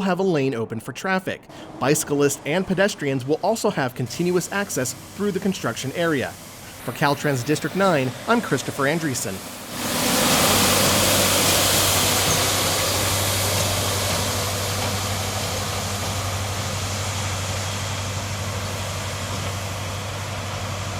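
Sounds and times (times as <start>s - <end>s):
vehicle engine humming: 1.5s - 8.3s
road noise: 1.5s - 20.9s.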